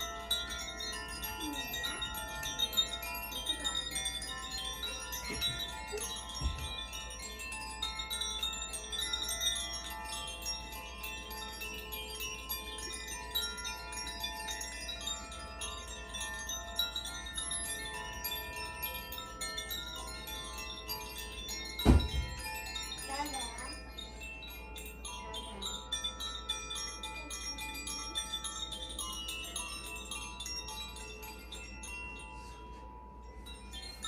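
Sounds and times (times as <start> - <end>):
chimes ringing: 0.0 - 34.0.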